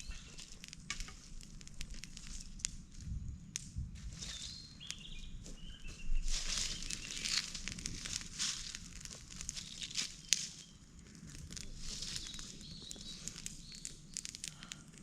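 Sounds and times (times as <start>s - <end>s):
twigs snapping: 0.0s - 3.0s, 6.3s - 15.0s
dry twigs and leaves crackling: 0.0s - 15.0s.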